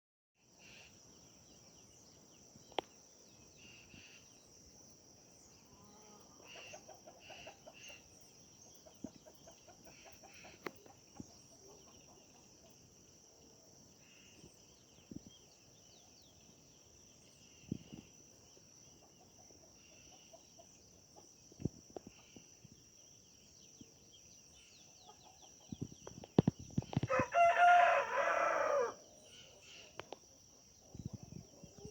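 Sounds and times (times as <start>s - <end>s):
high insect trill: 0.5s - 31.9s
small bird chirps: 14.0s - 27.2s
rooster crowing loudly: 27.1s - 29.0s.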